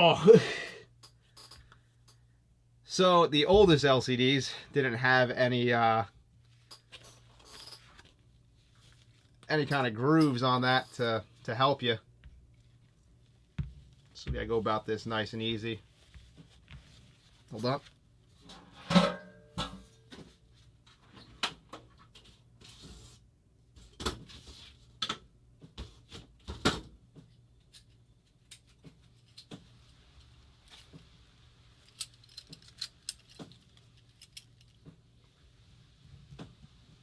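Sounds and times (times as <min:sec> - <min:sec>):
metal parts and tools clinking: 0:01.0 - 0:02.2, 0:06.6 - 0:08.1, 0:31.8 - 0:34.8.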